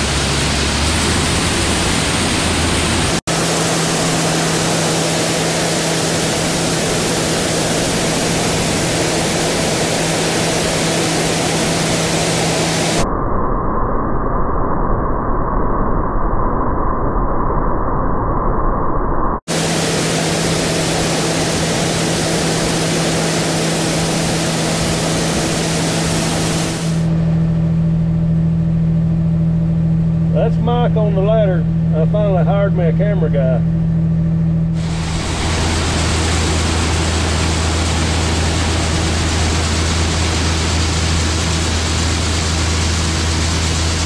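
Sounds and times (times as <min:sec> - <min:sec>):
combine engine hum: 0:00.0 - 0:13.0, 0:19.4 - 0:44.0
loud even hiss of grain: 0:19.5 - 0:27.1, 0:34.8 - 0:42.1.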